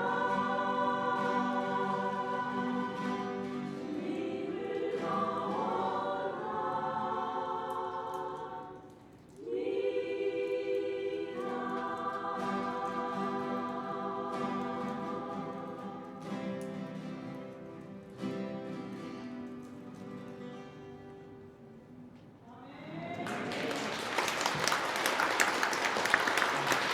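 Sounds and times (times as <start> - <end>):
choir singing a hymn: 0.0 - 17.8.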